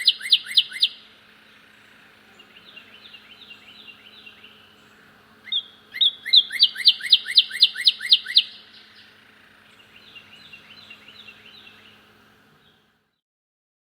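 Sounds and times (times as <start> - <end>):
bird singing loudly: 0.0 - 12.9
faint bird song: 0.0 - 13.2.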